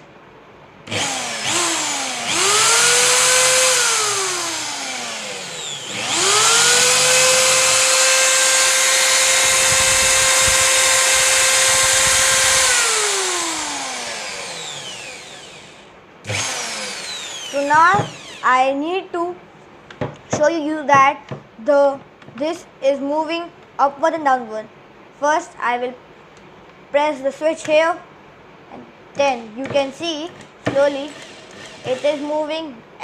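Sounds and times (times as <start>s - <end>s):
hammer drill motor whining: 0.9s - 18.5s, 30.4s - 32.4s.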